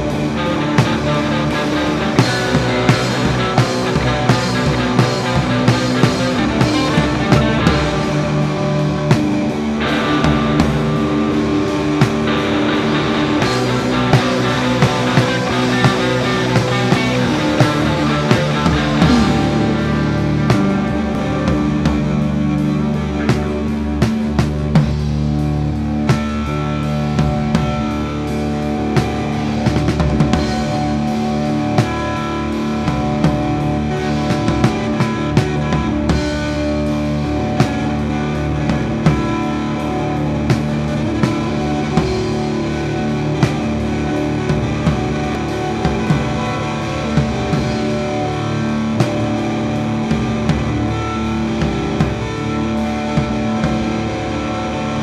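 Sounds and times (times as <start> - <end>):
bass guitar: 0.0 - 55.0
electric guitar: 0.0 - 55.0
rock band playing live: 0.0 - 55.0
steady drum beat: 0.0 - 55.0.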